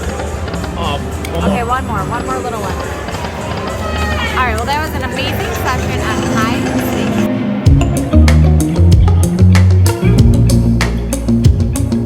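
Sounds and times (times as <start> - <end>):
heavy bass line: 5.6 - 12.0.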